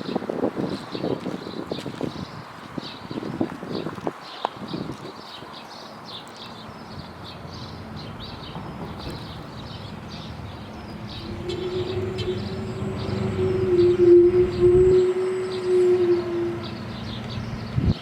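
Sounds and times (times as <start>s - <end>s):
small birds chirping: 0.0s - 18.0s
warning siren steady tone: 11.0s - 17.4s.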